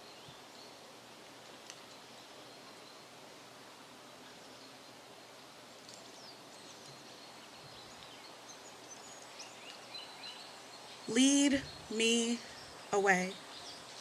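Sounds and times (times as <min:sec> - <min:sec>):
faint steady hiss: 0:00.0 - 0:14.0
small clicks and rustles: 0:01.2 - 0:02.1, 0:05.8 - 0:07.1, 0:08.8 - 0:10.0.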